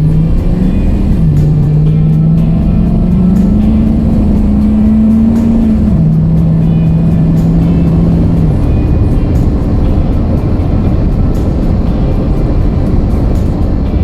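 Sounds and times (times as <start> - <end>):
road and engine rumble inside car: 0.0 - 14.0.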